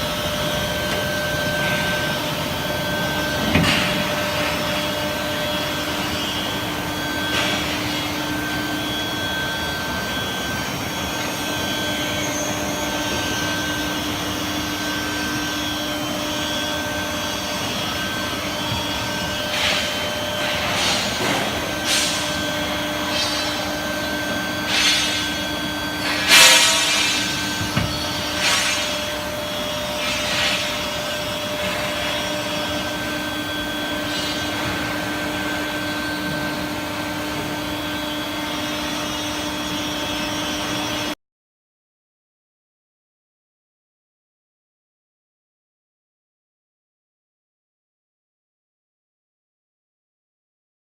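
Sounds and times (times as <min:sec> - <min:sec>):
industrial machinery running: 0:00.0 - 0:41.2.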